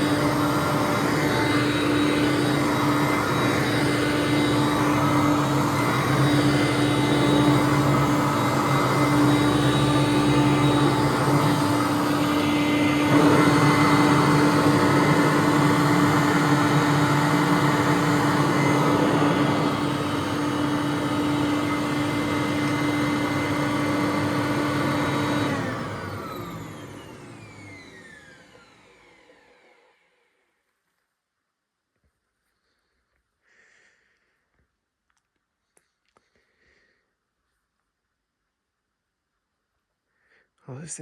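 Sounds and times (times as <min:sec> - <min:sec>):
vacuum cleaner running: 0:00.0 - 0:30.4
vacuum cleaner winding down: 0:00.0 - 0:30.4.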